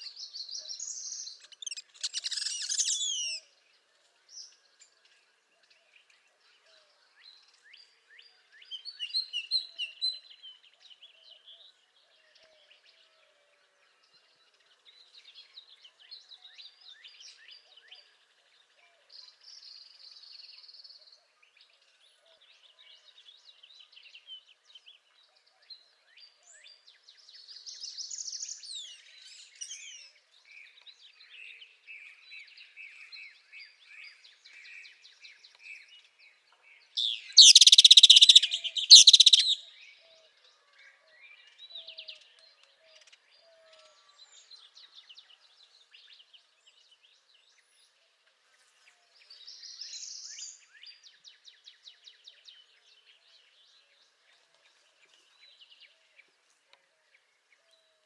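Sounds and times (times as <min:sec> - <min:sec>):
songbirds singing: 0:00.0 - 0:58.0
buzzy bird trills: 0:37.4 - 0:39.6.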